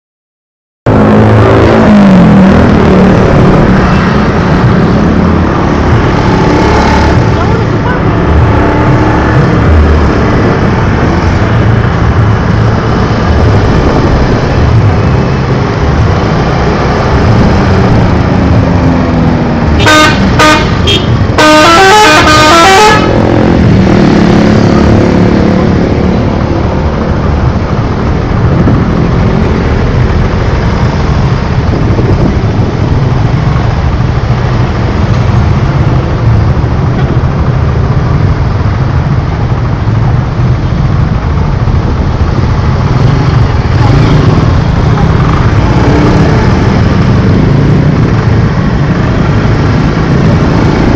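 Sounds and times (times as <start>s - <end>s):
highway traffic rumble: 0.8s - 50.9s
bus multi-tone horn: 19.8s - 23.4s.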